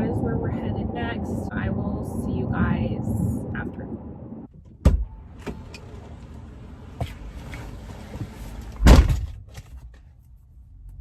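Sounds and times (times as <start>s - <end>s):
low steady rumble: 0.0s - 11.0s
car door shutting: 4.5s - 9.8s.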